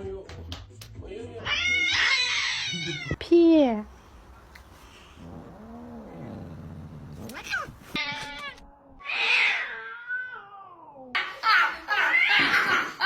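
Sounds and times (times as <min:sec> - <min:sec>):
cat meowing and yowling: 0:01.5 - 0:03.2, 0:07.2 - 0:11.2.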